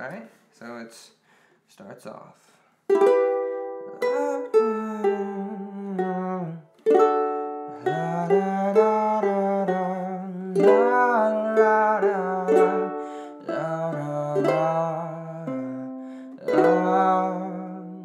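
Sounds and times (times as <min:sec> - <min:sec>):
ukulele picked notes: 0:02.9 - 0:18.0.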